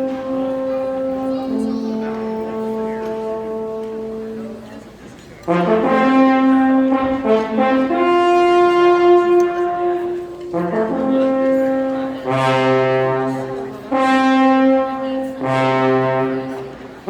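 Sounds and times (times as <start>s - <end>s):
alphorns playing slow tune: 0.0s - 12.4s.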